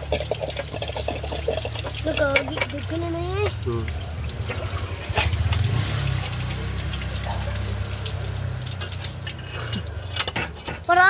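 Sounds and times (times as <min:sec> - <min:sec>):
coolant trickling: 0:00.0 - 0:11.0.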